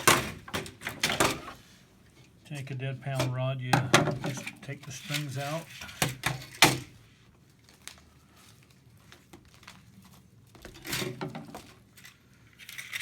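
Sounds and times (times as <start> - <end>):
pull cord rustling scrape: 4.2 - 6.2.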